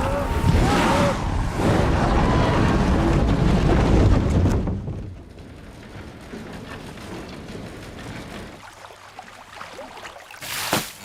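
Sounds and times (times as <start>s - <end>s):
loud deep rumbling: 0.0s - 6.0s.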